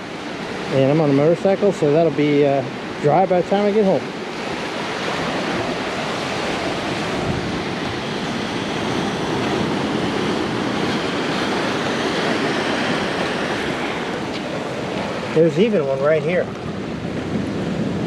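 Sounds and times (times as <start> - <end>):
surf washing over rocks: 0.0 - 18.0.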